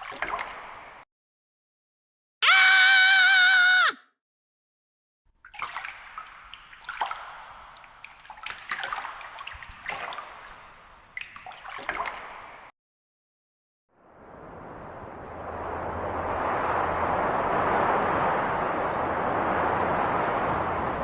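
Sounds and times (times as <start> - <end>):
water splashing and pouring: 0.0 - 1.0, 5.4 - 12.7.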